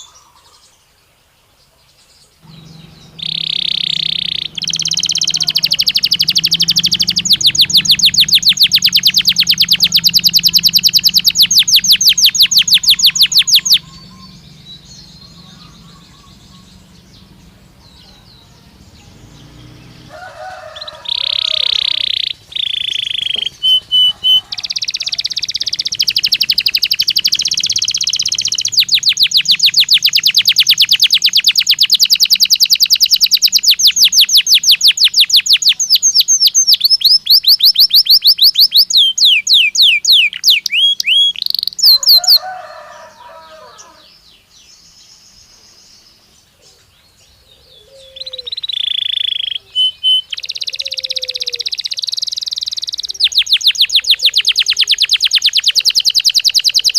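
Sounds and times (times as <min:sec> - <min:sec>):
canary singing trills: 0:00.0 - 0:56.9
brief lower bird call: 0:02.4 - 0:32.2, 0:47.8 - 0:56.9.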